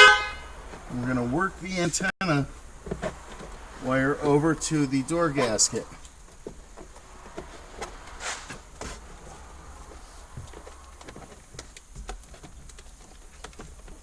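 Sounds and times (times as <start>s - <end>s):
faint clicks and rustles of hands: 5.5s - 14.0s.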